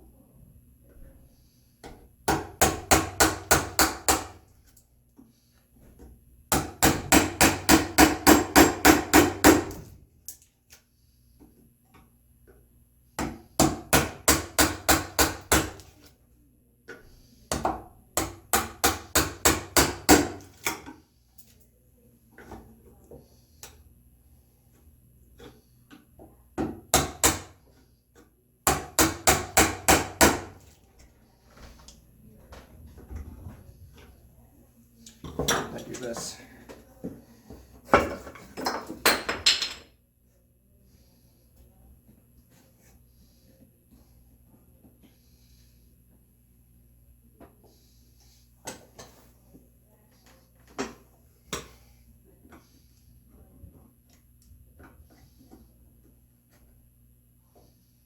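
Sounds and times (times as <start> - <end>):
mallet striking a chisel: 6.5 - 9.8.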